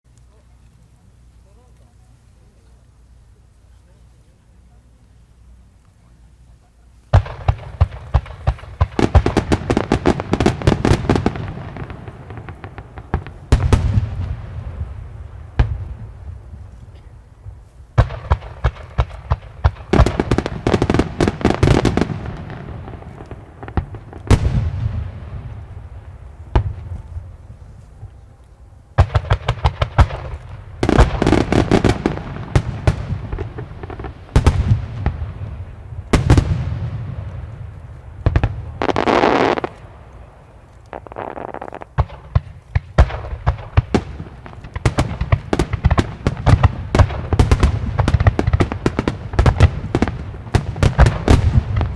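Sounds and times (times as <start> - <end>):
firework crackling: 7.1 - 51.9
firework shells bursting: 29.0 - 51.9.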